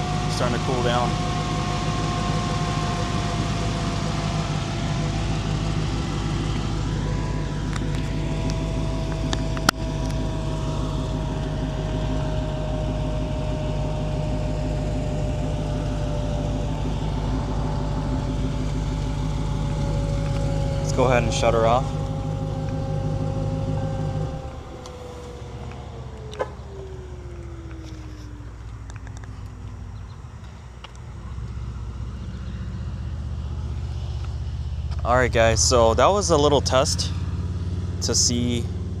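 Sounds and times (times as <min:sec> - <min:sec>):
whine dropping in pitch: 0:00.0 - 0:34.3, 0:34.9 - 0:37.3
car engine idling: 0:00.0 - 0:39.0.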